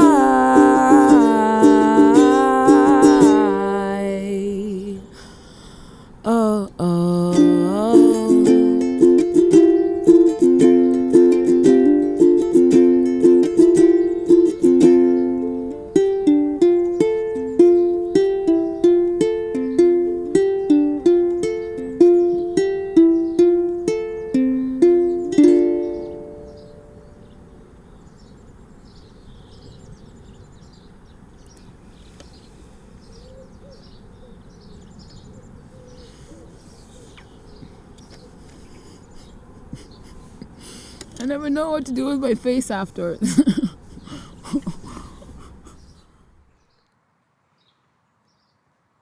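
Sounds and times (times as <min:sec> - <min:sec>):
plucked strings melody: 0:00.0 - 0:04.8, 0:06.9 - 0:27.2.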